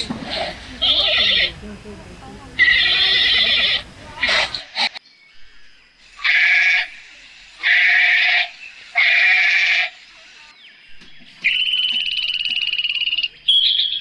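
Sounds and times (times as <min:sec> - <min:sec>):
goat bleating: 0:00.0 - 0:01.8, 0:02.5 - 0:04.8, 0:06.2 - 0:07.0, 0:07.6 - 0:10.0.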